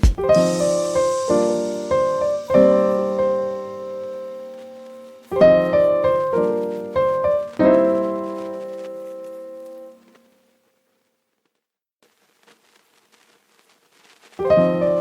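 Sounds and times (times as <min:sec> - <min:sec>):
slow piano chords: 0:00.0 - 0:10.4, 0:14.4 - 0:15.0.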